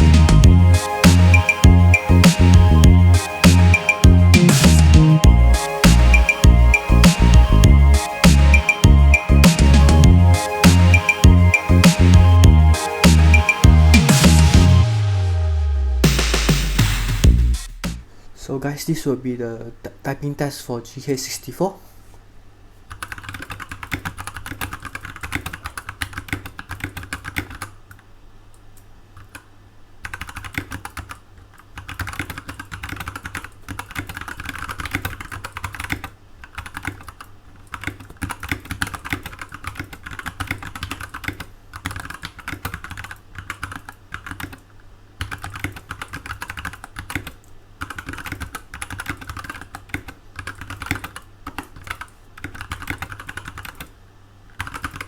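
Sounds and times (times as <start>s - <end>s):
mechanical keyboard clacking: 22.9s - 28.0s, 29.2s - 53.9s, 54.5s - 55.0s.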